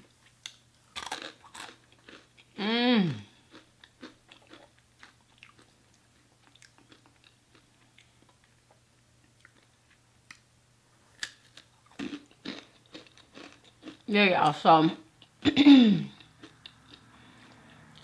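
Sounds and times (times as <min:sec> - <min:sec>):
faint steady hum: 0:00.0 - 0:18.0
close chewing: 0:03.5 - 0:08.6, 0:11.2 - 0:14.1.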